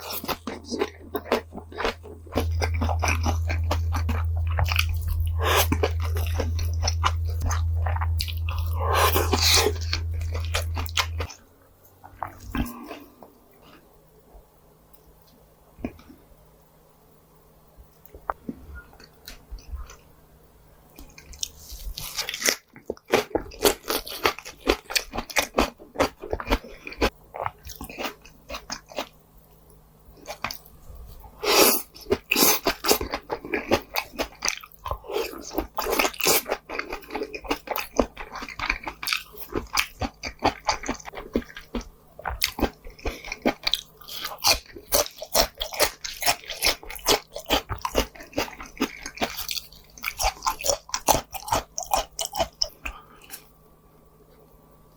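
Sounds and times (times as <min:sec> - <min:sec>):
close-miked chewing: 0:00.0 - 0:11.4, 0:21.0 - 0:53.5.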